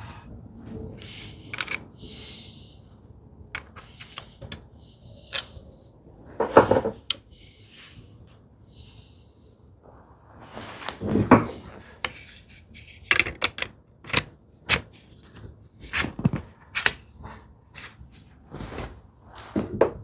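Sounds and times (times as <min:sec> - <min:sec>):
hand tools set on workbench: 0:01.6 - 0:01.9, 0:03.6 - 0:04.6, 0:12.0 - 0:12.4, 0:13.1 - 0:14.8.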